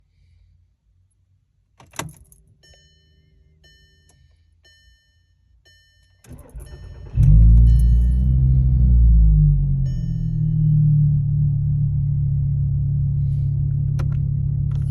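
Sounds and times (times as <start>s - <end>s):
car engine running loudly: 7.0s - 14.9s.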